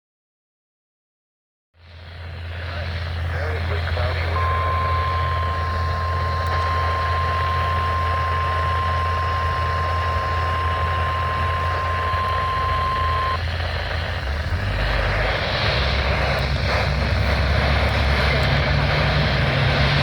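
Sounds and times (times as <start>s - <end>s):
steady high-pitched alarm tone: 3.6s - 17.8s.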